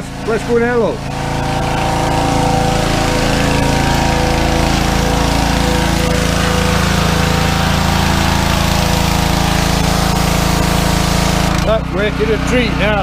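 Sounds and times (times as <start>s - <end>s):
small petrol engine running: 0.0s - 13.0s.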